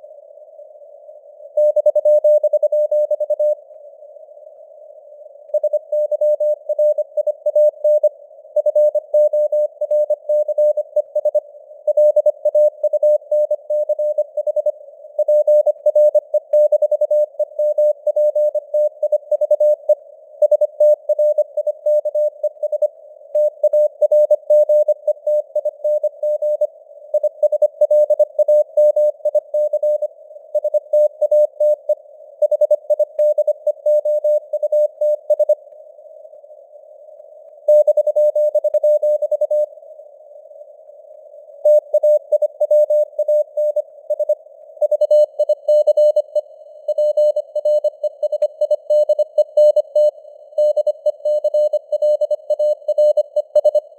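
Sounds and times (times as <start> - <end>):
faint radio hiss: 0.0 - 1.7, 3.3 - 5.9, 6.6 - 9.8, 31.6 - 32.5, 35.6 - 37.8, 38.4 - 44.9
morse code tone: 41.7 - 53.9.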